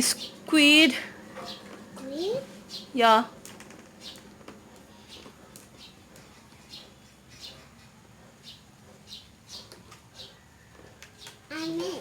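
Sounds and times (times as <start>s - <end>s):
faint high bird chirps: 4.9s - 12.0s.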